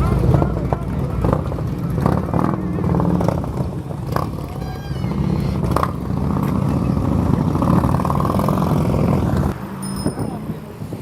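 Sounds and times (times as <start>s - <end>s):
high wavering squeak: 4.5s - 5.6s.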